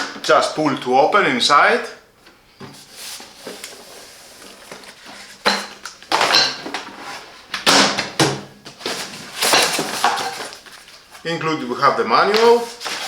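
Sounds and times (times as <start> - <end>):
contents knocking and rattling: 4.7 - 7.0, 7.6 - 10.8.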